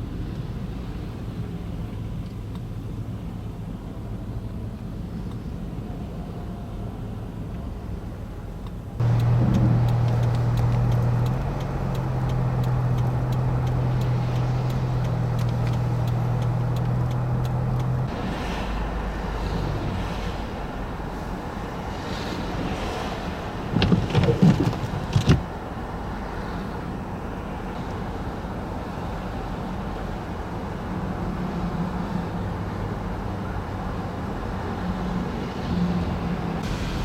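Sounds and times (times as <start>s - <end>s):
vehicle engine drone: 0.0s - 28.2s, 33.2s - 37.0s
road noise: 0.0s - 37.0s
traffic noise: 0.0s - 37.0s
faint clicking: 8.6s - 18.1s.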